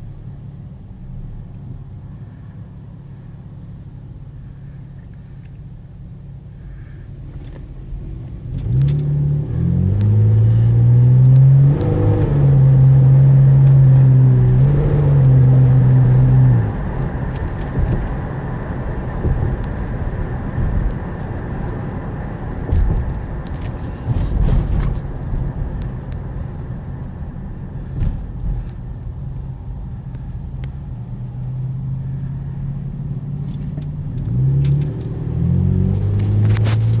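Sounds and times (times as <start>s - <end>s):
road noise: 0.0s - 37.0s
engine accelerating hard: 7.9s - 26.6s, 30.6s - 37.0s.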